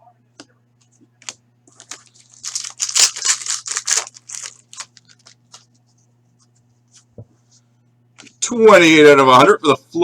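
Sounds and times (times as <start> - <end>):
wrapper tearing and crinkling: 1.7 - 5.6.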